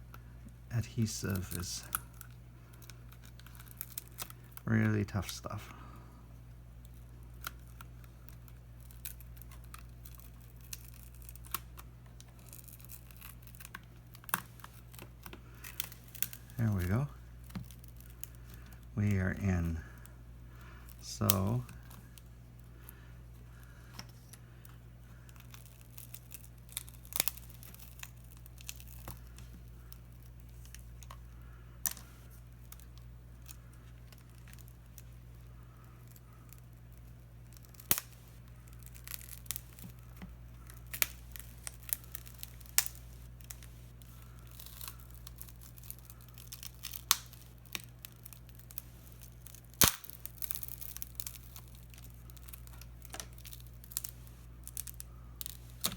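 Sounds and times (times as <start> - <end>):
steady low hum: 0.0 - 55.9
tape tearing: 1.0 - 5.3, 36.1 - 55.9
glass crackling: 36.0 - 55.9.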